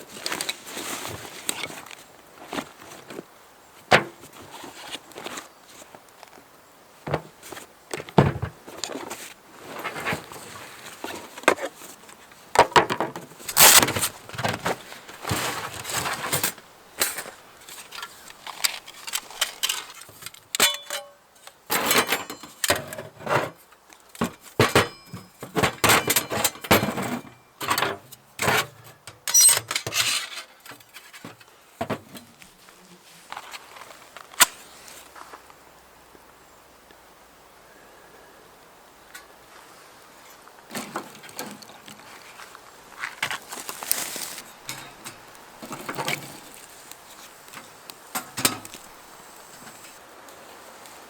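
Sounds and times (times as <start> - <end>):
cooking gear clinking: 17.9 - 23.0, 24.6 - 28.0
wood being handled: 40.7 - 50.0.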